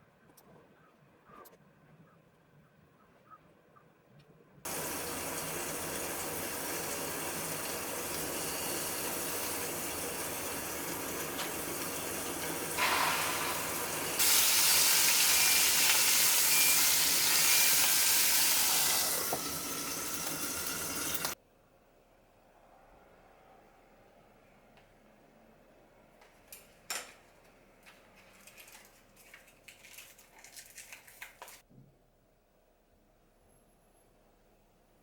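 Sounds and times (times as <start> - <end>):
running water hiss: 4.7 - 21.4.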